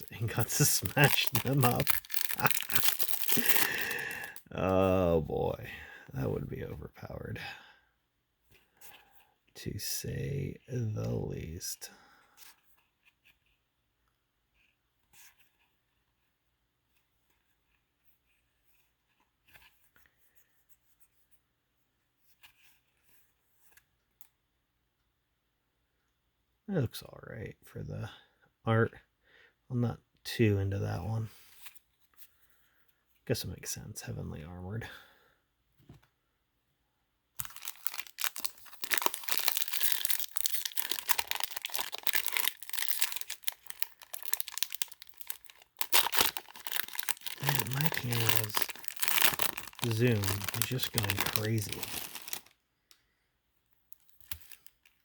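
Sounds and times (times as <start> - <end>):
cards rustling and clicking: 0.0 - 4.4, 37.4 - 52.5
foil wrapper crinkling and tearing: 0.0 - 4.4, 37.4 - 52.5.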